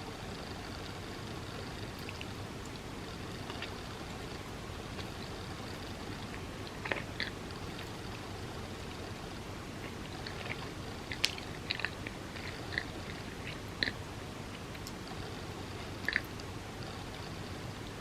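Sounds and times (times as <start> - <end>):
background hiss: 0.0 - 18.0
person chewing: 9.8 - 17.0.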